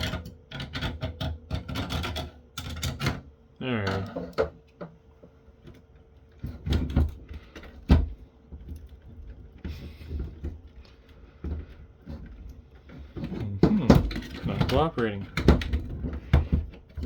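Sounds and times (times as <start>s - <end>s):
faint steady hum: 0.0s - 17.0s
plastic case knocking and clicking: 13.2s - 16.7s.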